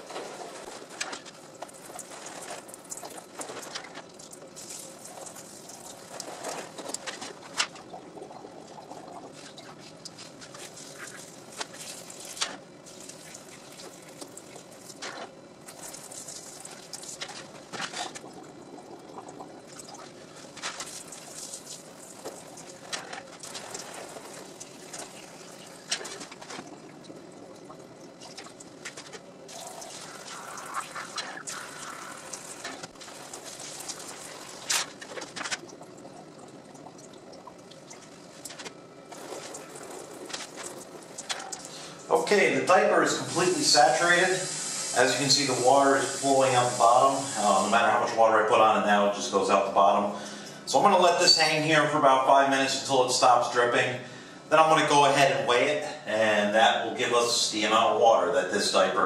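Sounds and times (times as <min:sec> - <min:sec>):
water trickling: 0:01.4 - 0:42.1
squirt bottle spraying water: 0:43.1 - 0:47.7.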